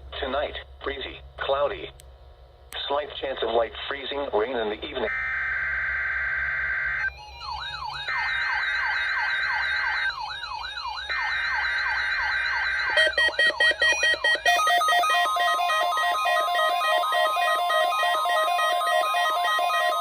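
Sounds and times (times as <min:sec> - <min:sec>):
warbling electronic siren: 0:05.1 - 0:20.0
fast pulsing electronic tune: 0:07.4 - 0:20.0
harsh two-tone data bursts: 0:12.7 - 0:20.0.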